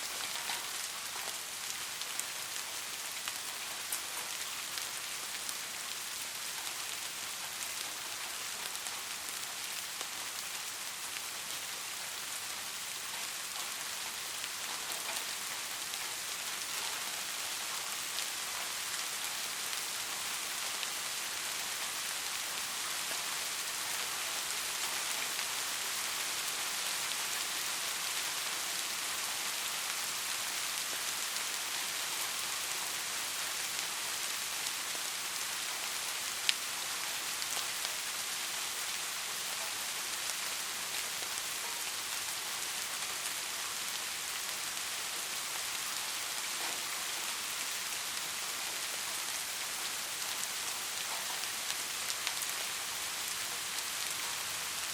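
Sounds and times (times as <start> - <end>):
raindrops pattering on a surface: 0.0 - 54.9
steady rain falling: 0.0 - 54.9.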